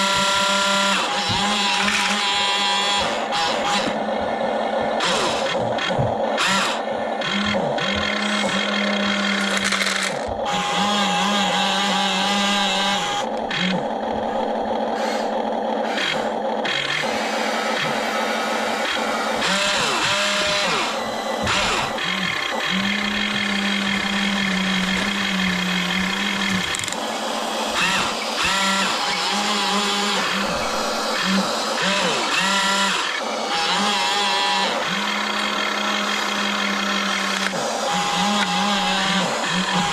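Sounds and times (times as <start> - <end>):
electric motors whining: 0.0 - 39.9
plastic bricks clattering: 8.9 - 10.4, 25.0 - 27.0.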